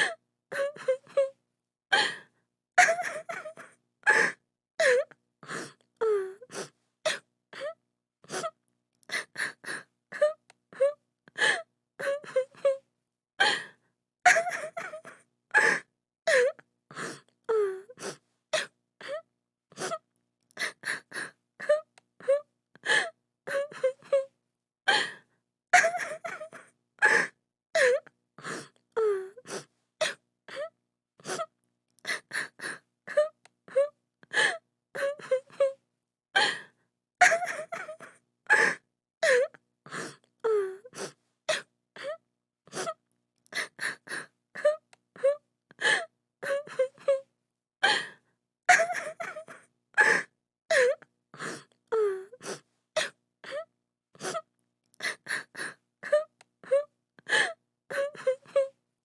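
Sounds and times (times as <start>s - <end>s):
woman sobbing: 2.8s - 5.1s, 14.3s - 16.6s, 25.8s - 28.0s, 37.2s - 39.5s, 48.7s - 51.0s.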